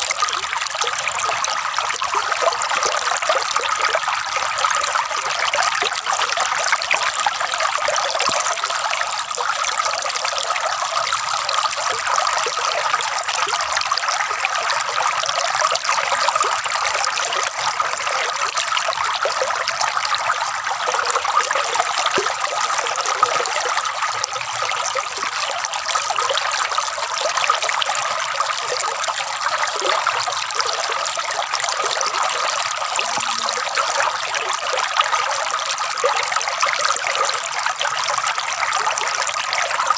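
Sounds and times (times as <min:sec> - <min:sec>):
water trickling and gurgling: 0:00.0 - 0:39.9.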